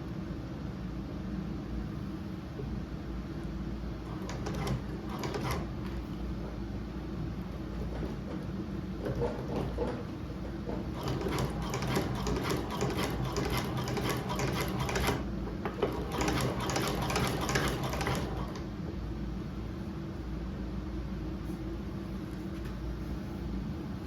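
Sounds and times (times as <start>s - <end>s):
sewing machine needle clacking: 4.0s - 6.2s, 7.8s - 18.7s.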